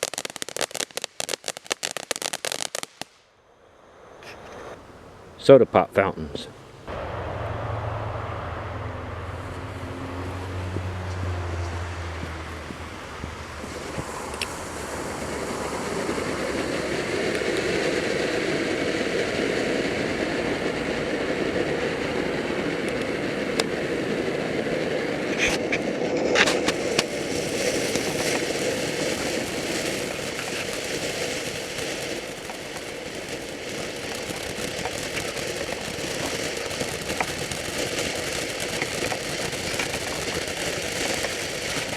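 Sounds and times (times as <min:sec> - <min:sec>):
firework crackles: 0:00.0 - 0:41.9
firework fountain hissing: 0:00.0 - 0:41.9
low hum: 0:06.5 - 0:16.5.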